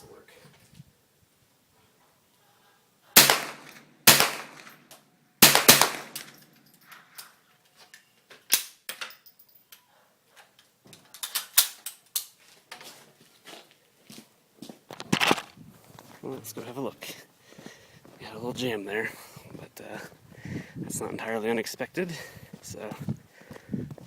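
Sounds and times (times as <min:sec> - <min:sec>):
rifle gunshots: 0:03.2 - 0:04.8, 0:05.4 - 0:06.4
metal clicks and clinks: 0:06.1 - 0:07.3, 0:08.9 - 0:09.8.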